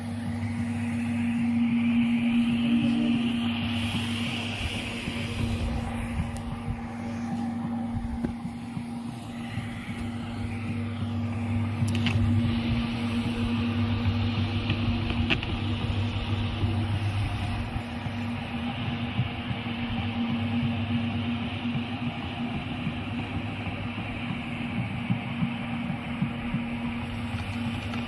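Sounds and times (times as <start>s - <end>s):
electric motor humming: 0.0s - 25.1s.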